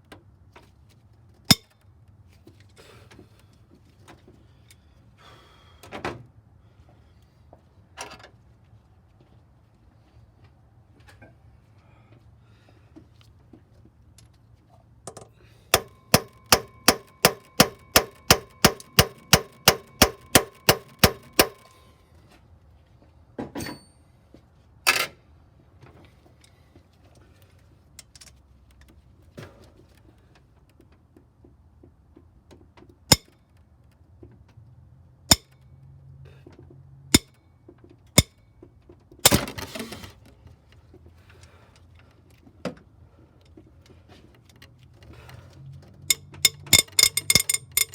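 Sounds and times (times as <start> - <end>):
hammer striking steel chisel: 15.8 - 21.7, 46.1 - 47.9.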